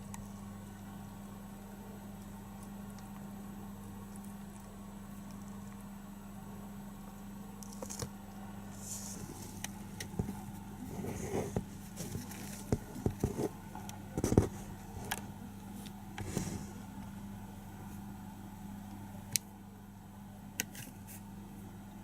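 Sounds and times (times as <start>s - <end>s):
steady low hum: 0.0s - 22.0s
kitten paws thumping and scratching: 8.8s - 16.8s.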